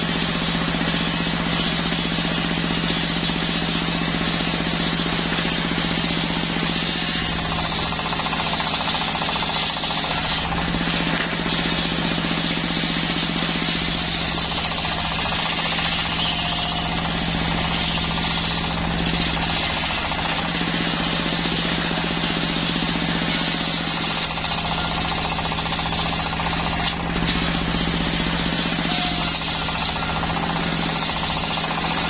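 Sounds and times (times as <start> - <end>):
circular saw cutting wood: 0.0 - 32.0.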